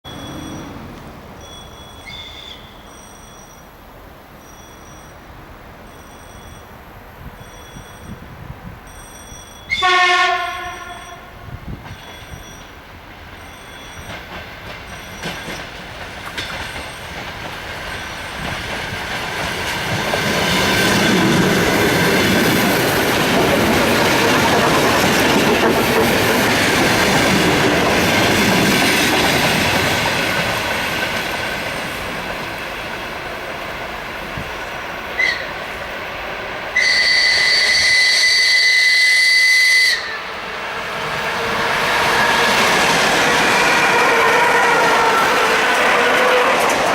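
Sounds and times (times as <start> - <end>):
crossing bell dinging: 0.1 - 0.8, 8.8 - 12.7
high-pitched whistle: 0.1 - 0.8, 1.4 - 3.6, 7.4 - 8.2, 8.9 - 12.7, 36.8 - 40.3
train rolling rumble: 0.1 - 46.9
train horn blast: 9.7 - 11.7, 35.2 - 35.6, 36.8 - 46.9.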